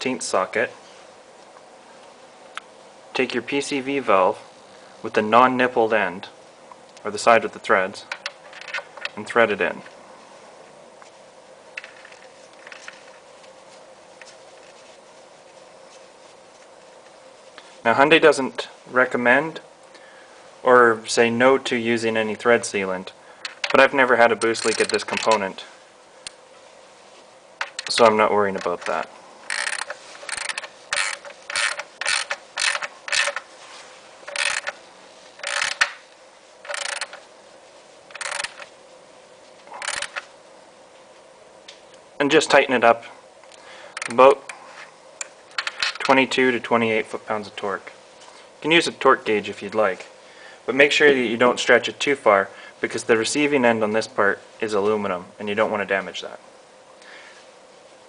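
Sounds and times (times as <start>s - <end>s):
faint hum: 0.0s - 58.0s
metal valve clicks and scrapes: 24.4s - 25.4s, 28.6s - 33.4s.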